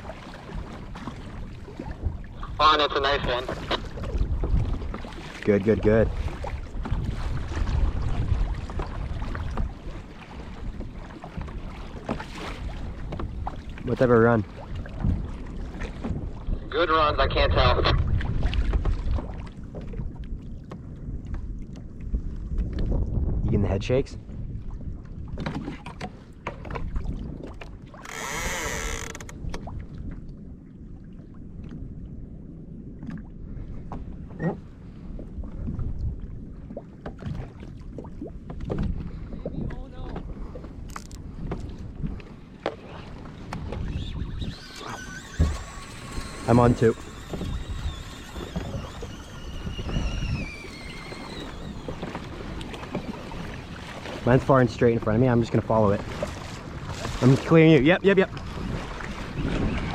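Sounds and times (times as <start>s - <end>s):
wind buffeting microphone: 0.0s - 16.7s, 17.3s - 28.1s, 29.1s - 59.9s
sea noise: 0.0s - 22.5s, 23.8s - 59.9s
water splashes: 0.0s - 23.1s, 33.0s - 59.9s
water noise: 0.0s - 59.9s
light knocks against a hull: 14.8s - 16.2s, 25.3s - 28.0s, 36.7s - 44.0s.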